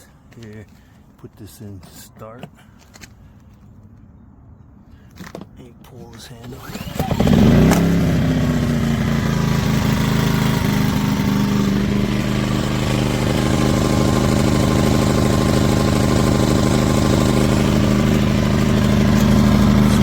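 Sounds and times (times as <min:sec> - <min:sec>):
recoil starter pull: 0:06.4 - 0:20.0
generator engine running: 0:06.5 - 0:20.0.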